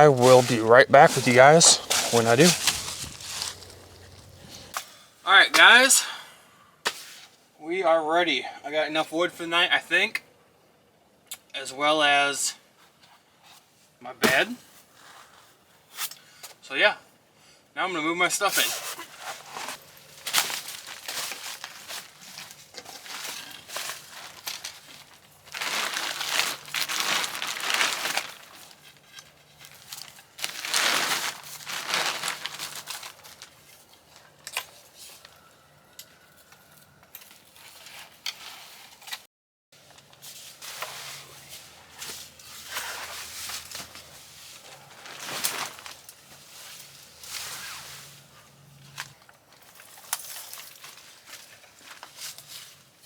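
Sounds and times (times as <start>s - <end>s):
gear rustling and crinkling: 0.0s - 4.8s, 19.0s - 35.4s, 39.8s - 53.0s.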